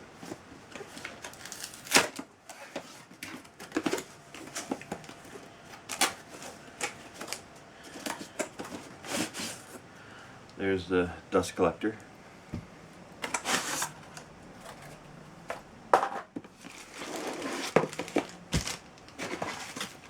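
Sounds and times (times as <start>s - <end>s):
packaging and plastic rustling: 0.2s - 9.8s, 13.2s - 15.7s, 16.4s - 20.0s.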